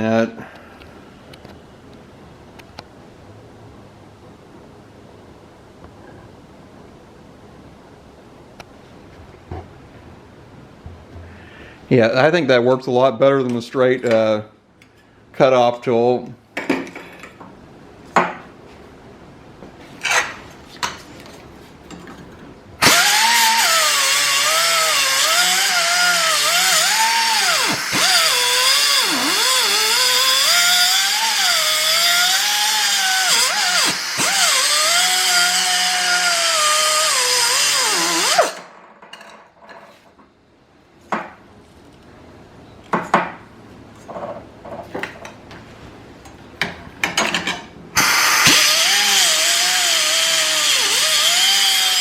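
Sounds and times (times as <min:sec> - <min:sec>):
cut-off tool grinding metal: 0:22.8 - 0:38.6, 0:48.0 - 0:52.0.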